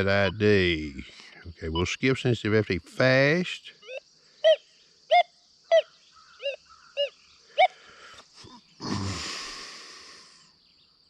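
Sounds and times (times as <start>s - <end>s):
metal detector beeps: 1.7s - 2.0s.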